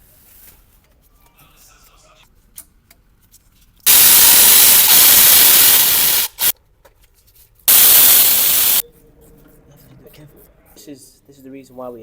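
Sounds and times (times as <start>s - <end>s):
pressurised spray hissing: 3.9s - 6.5s, 7.7s - 8.8s.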